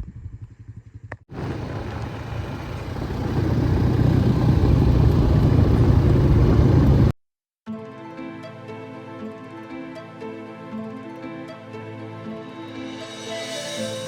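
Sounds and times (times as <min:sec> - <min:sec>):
vehicle engine running: 0:01.3 - 0:07.2.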